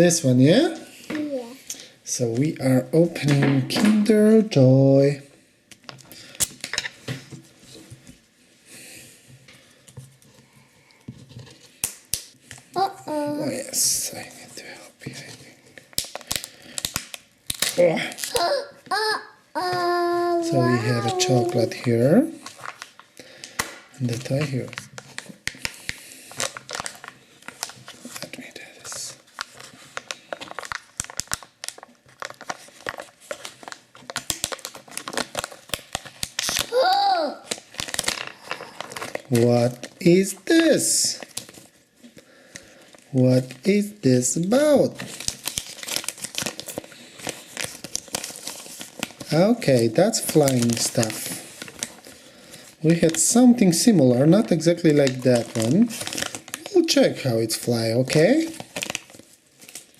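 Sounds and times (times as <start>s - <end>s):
plastic wrapper crinkling: 15.2s - 19.0s, 19.7s - 43.7s, 44.3s - 59.9s
plastic handling noises: 19.6s - 43.7s, 44.4s - 57.2s.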